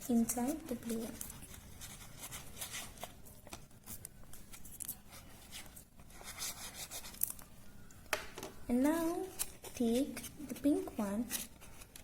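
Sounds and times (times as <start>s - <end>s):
paper rustling: 8.8s - 12.0s.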